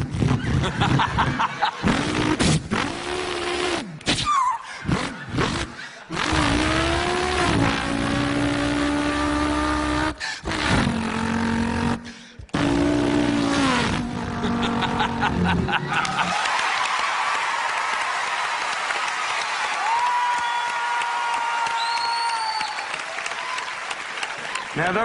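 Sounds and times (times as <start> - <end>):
man imitating race car engine: 4.8 - 15.7.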